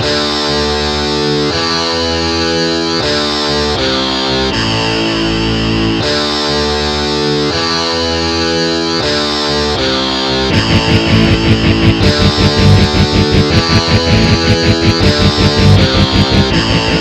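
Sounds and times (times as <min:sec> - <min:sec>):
electronic music with sustained chords: 0:09.8 - 0:17.0.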